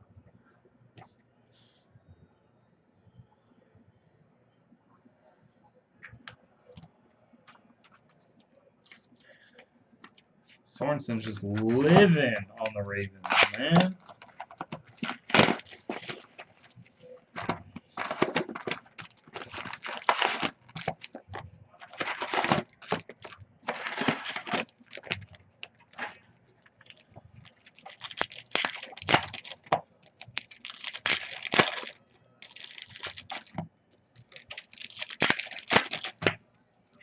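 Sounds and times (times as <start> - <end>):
card pack wrappers tearing and crinkling: 11.2 - 16.6, 17.4 - 25.3, 26.9 - 33.6, 34.2 - 36.3.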